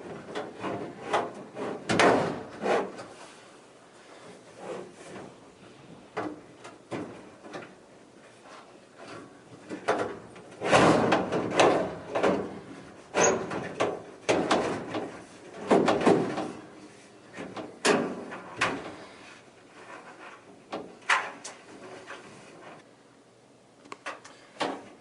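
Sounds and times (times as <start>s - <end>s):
metal dryer drum clunking: 9.7s - 16.6s.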